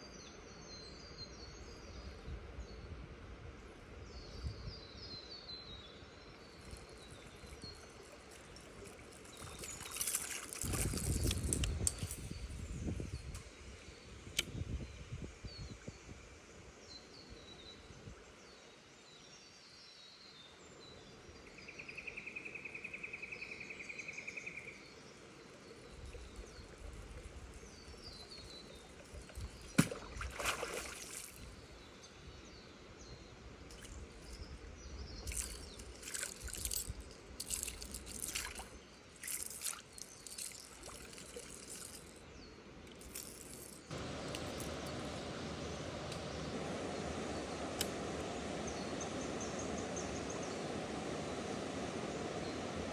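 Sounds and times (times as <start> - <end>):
water splashing and gurgling: 6.8 - 12.2, 28.1 - 31.6, 35.2 - 42.2.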